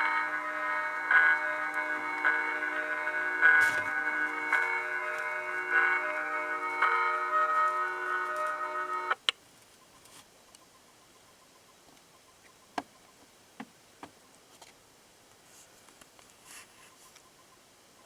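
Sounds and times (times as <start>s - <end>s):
church bell chime: 0.0s - 9.2s
low background hiss: 0.0s - 18.0s.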